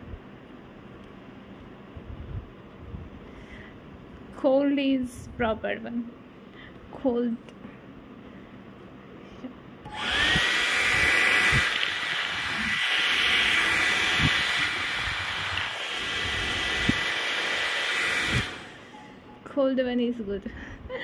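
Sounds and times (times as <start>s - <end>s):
hair dryer running: 9.8s - 19.2s.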